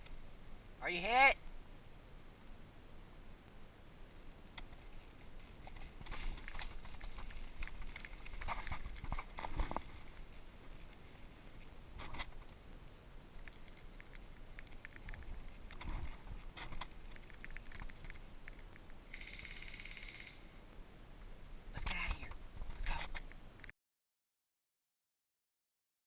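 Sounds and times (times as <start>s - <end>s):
brush and twigs crackling: 4.5s - 19.0s.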